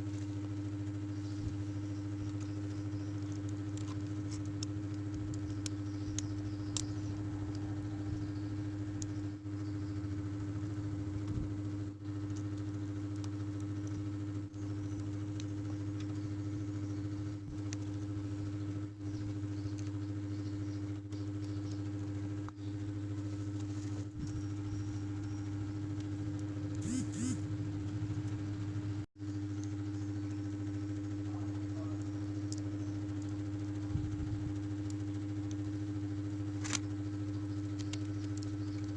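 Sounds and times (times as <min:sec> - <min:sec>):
hair dryer running: 0:26.8 - 0:27.4.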